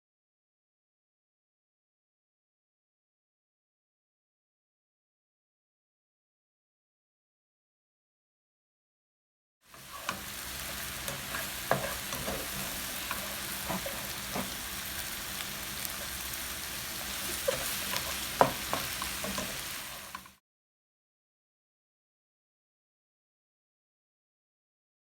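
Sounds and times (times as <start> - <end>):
food sizzling in a pan: 9.7 - 20.4.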